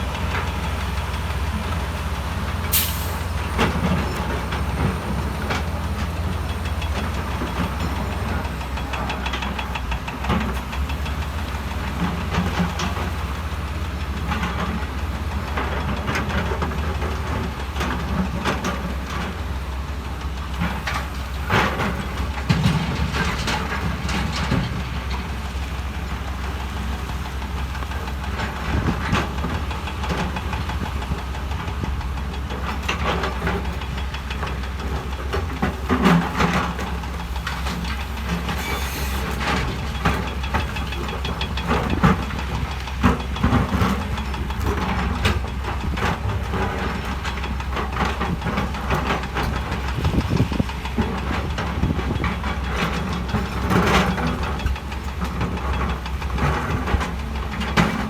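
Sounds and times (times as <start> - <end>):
heavy diesel machinery running: 0.0 - 58.0
metal clanks and knocks: 27.4 - 58.0.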